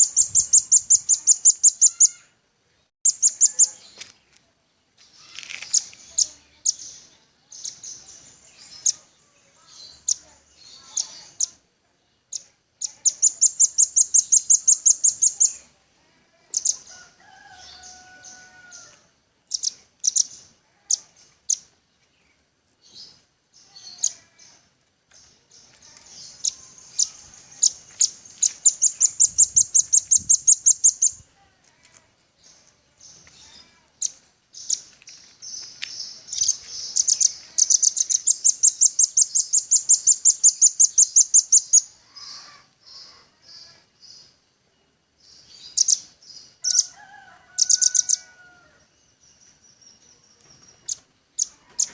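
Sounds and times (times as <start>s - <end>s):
bird trilling high chips: 0.0s - 2.3s, 3.1s - 3.8s.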